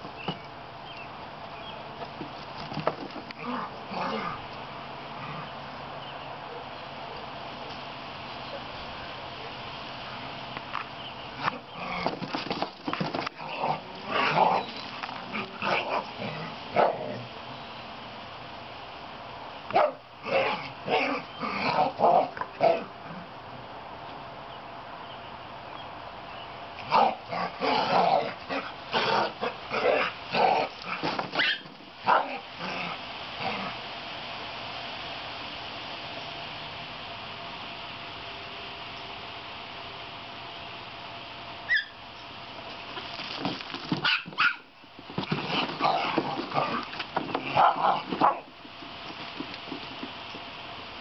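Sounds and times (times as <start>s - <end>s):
steady hiss: 0.0s - 43.9s
puppies play-growling and yipping: 11.4s - 17.3s, 26.8s - 33.8s, 41.7s - 42.0s, 43.0s - 50.0s.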